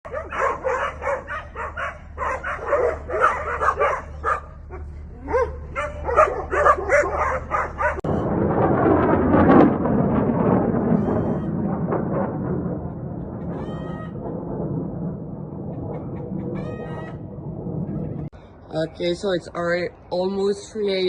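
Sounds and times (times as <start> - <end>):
dog barking and yipping: 0.1 - 8.0
low hum: 0.1 - 20.8.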